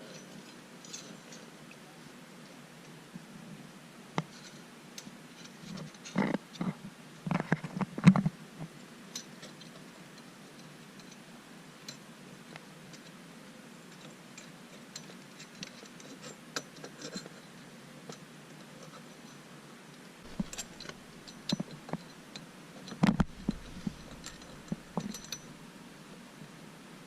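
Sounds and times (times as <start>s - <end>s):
small metallic clicks and taps: 20.3s - 25.5s.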